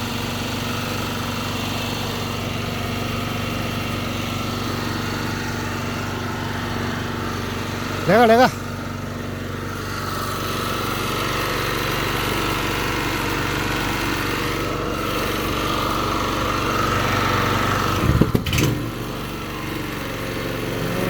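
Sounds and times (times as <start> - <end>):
small generator engine running: 0.0 - 21.0
knocks: 18.0 - 18.8.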